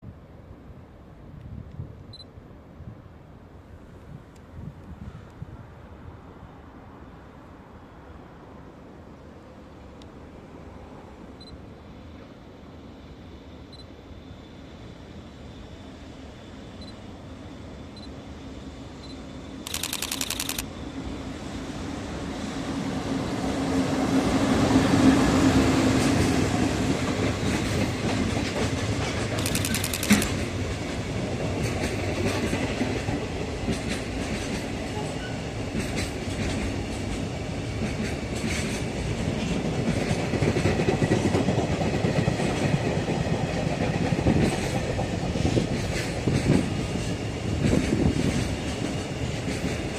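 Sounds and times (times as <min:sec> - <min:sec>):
electric locomotive humming: 0:09.6 - 0:49.9
sharp click: 0:19.7 - 0:20.6, 0:29.4 - 0:30.4
short rasping bursts: 0:19.7 - 0:20.6, 0:29.4 - 0:30.3
train wheels clickety-clack: 0:24.6 - 0:49.9.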